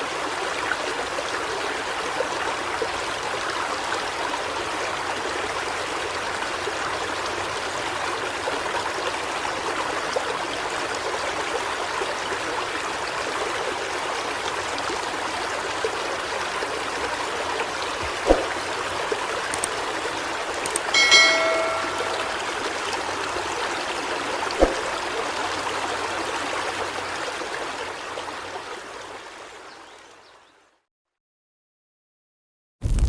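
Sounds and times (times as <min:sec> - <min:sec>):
floodwater rushing: 0:15.6 - 0:29.2.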